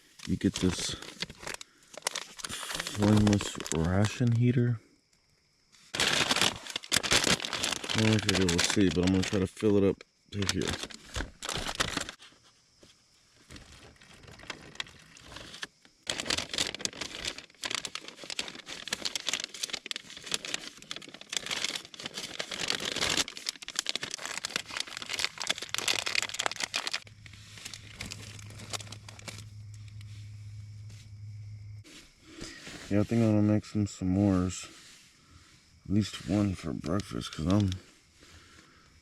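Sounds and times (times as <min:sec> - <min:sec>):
plastic packaging crinkling: 0:00.0 - 0:04.5, 0:05.9 - 0:12.2, 0:13.4 - 0:30.1, 0:36.3 - 0:37.8.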